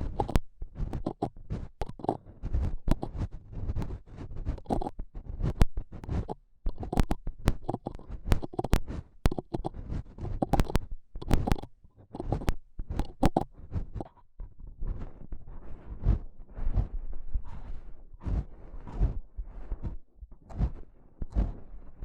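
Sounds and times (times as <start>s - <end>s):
rubbing and scratching microphone: 0.0s - 22.0s
sharp clicks: 5.6s - 14.1s.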